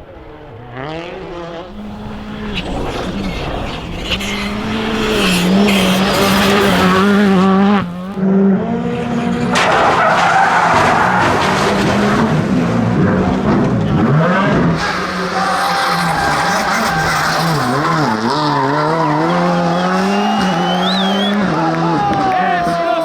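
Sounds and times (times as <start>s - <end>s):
rally car engine passing: 0.7s - 23.0s
tyres skidding: 1.6s - 8.2s, 14.3s - 23.0s.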